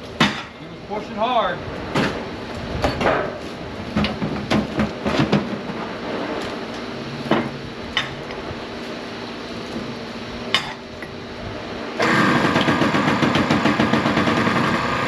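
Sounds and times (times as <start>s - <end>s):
metal clanks and knocks: 2.8s - 5.8s.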